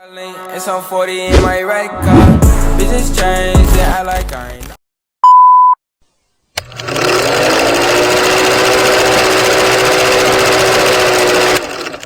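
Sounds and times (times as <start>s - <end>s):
motor running: 6.6s - 12.0s.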